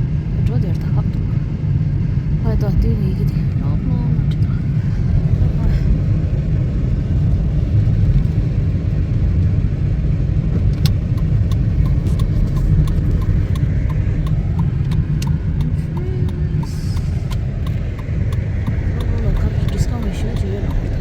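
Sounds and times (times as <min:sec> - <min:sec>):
car cabin rumble: 0:00.0 - 0:21.0
light ticking: 0:10.4 - 0:21.0.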